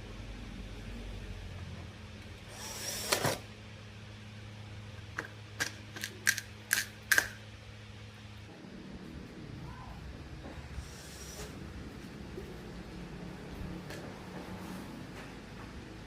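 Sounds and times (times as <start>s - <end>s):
low electrical hum: 0.0s - 16.0s
sharp clicks of small hard objects: 5.2s - 7.4s.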